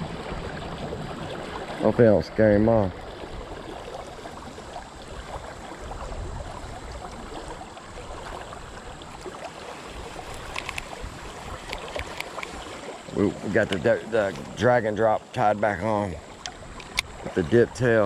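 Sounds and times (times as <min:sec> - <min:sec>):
creek water running: 0:00.0 - 0:18.0
light clicks: 0:10.4 - 0:11.0.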